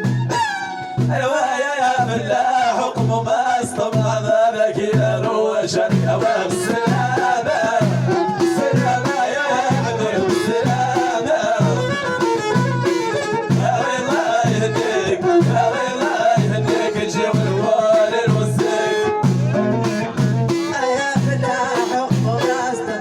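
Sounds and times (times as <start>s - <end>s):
sharp percussion: 4.8s - 23.0s.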